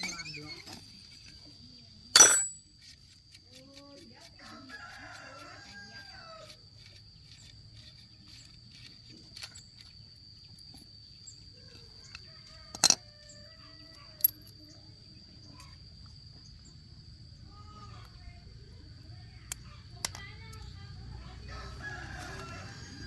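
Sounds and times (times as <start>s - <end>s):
faint rooster crowing: 4.2s - 6.9s, 11.6s - 14.7s, 20.6s - 23.0s.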